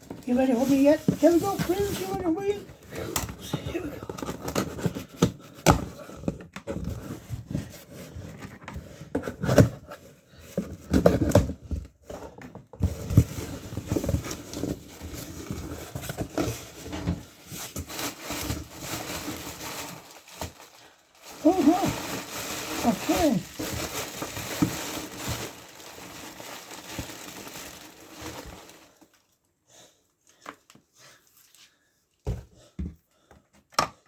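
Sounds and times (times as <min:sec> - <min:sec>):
cardboard and packing rustling: 0:00.0 - 0:29.4
cardboard parcel being opened: 0:00.0 - 0:29.4.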